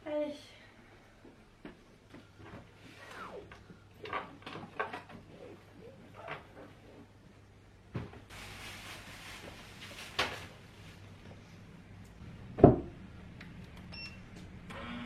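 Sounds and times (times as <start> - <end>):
furniture drawers and doors knocking: 12.6 - 12.9.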